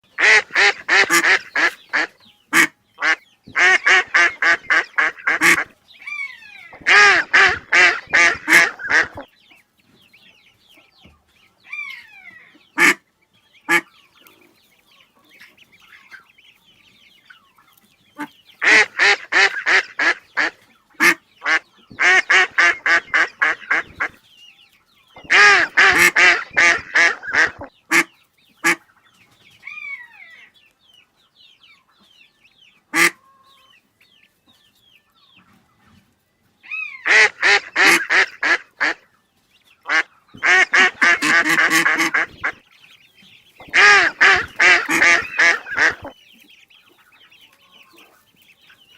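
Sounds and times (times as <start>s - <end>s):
ducks quacking rapidly: 0.1s - 9.3s, 12.8s - 13.0s, 13.7s - 14.0s, 18.2s - 24.2s, 25.2s - 28.9s, 32.9s - 33.2s, 37.0s - 39.0s, 39.8s - 48.9s.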